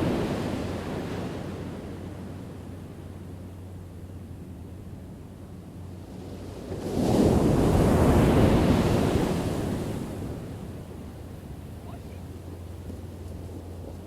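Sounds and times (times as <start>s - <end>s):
low steady rumble: 0.0s - 7.8s, 9.2s - 14.0s
wave breaking and washing in: 6.0s - 14.0s.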